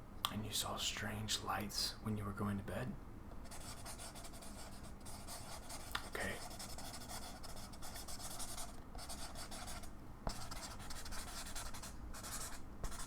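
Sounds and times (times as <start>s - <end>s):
pen scratching on paper: 3.5s - 13.0s.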